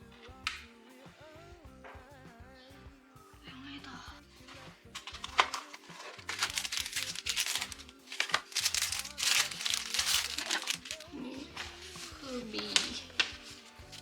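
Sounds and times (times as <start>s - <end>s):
background music: 0.0s - 14.0s
packaging crinkling: 5.0s - 14.0s.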